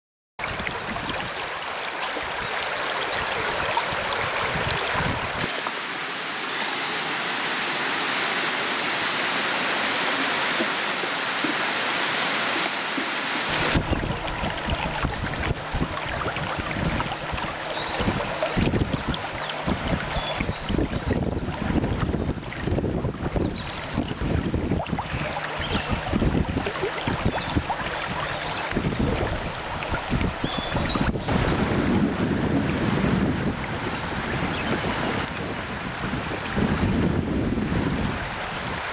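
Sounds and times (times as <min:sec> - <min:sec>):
river water rushing over rapids: 0:00.4 - 0:22.8
wind buffeting microphone: 0:03.2 - 0:05.5, 0:13.5 - 0:38.9.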